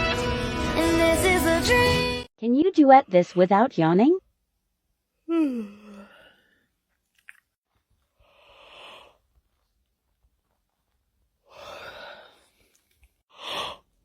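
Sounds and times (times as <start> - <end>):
person yawning: 5.3 - 6.3.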